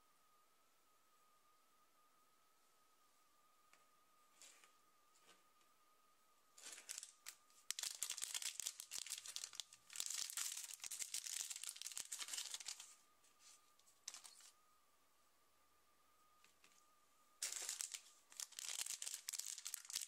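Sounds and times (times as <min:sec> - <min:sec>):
foil wrapper tearing and crinkling: 0:06.6 - 0:12.9, 0:14.1 - 0:14.5, 0:17.4 - 0:20.0.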